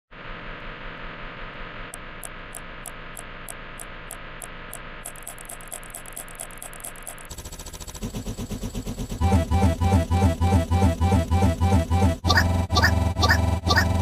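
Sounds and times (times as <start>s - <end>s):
static-like hiss: 0.1s - 7.4s
high ticking: 1.9s - 14.0s.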